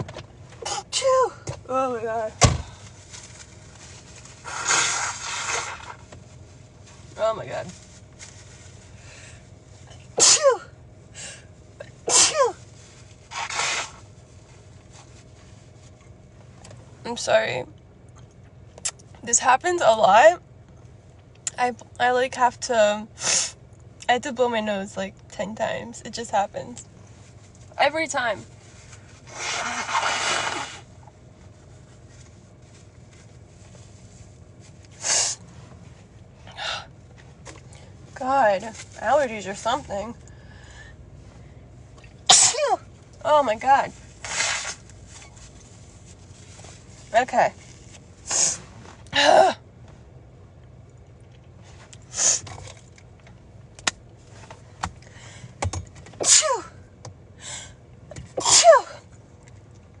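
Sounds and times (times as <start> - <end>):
woman blowing her nose: 4.4 - 6.0, 13.3 - 14.0, 29.3 - 30.8
woman sneezing: 10.2 - 10.8, 11.9 - 12.6, 42.3 - 42.8, 48.3 - 49.6, 56.2 - 56.8, 58.4 - 59.0.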